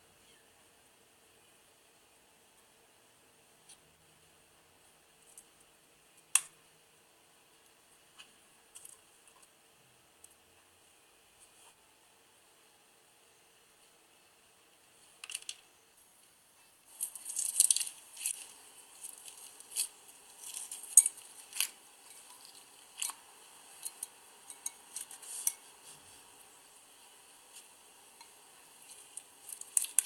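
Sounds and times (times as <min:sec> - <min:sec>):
plastic charms clicking and rattling: 0:28.9 - 0:30.0.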